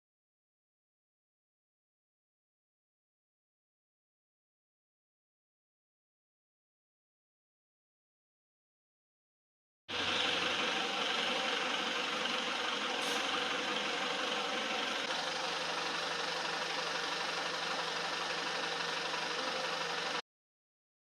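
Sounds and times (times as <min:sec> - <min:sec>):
diesel engine idling with knock: 0:09.9 - 0:20.2.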